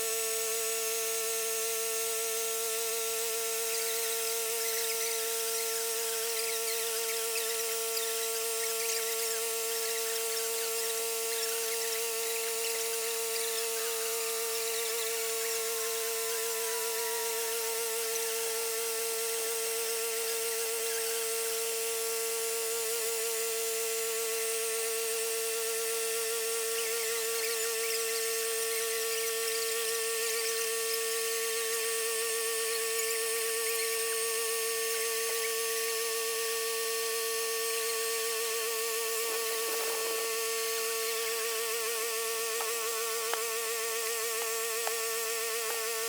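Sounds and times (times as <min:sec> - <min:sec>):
sawmill whining: 0:00.0 - 0:46.0.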